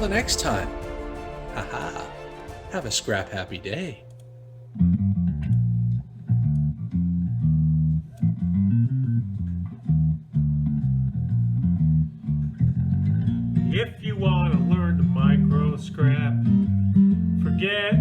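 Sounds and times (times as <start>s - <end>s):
bass guitar riff with beat: 4.8s - 18.0s.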